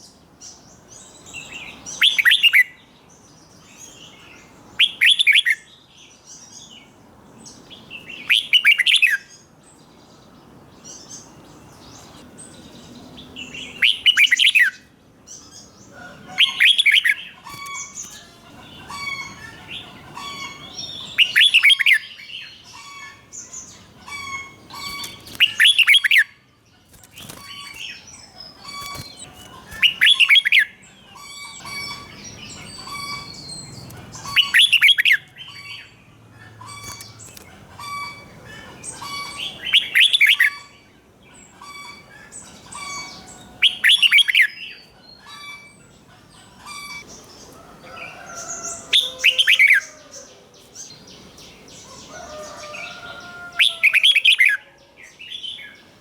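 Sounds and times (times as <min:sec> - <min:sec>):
bird singing loud phrases: 0:00.0 - 0:56.0
soft bird chirps: 0:15.4 - 0:36.0.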